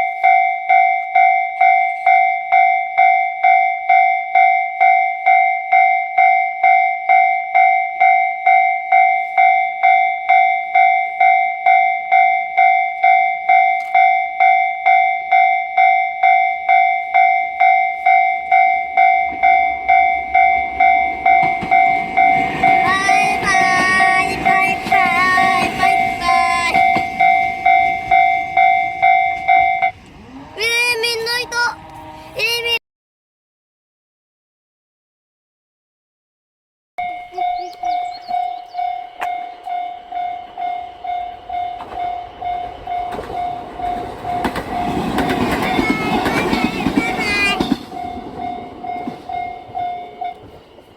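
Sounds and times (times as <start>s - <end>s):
railway crossing bell ringing: 0.0s - 31.8s, 37.0s - 50.9s
high wavering tones: 0.0s - 32.7s, 37.0s - 50.9s
train rumbling past: 7.6s - 32.8s, 37.0s - 50.9s.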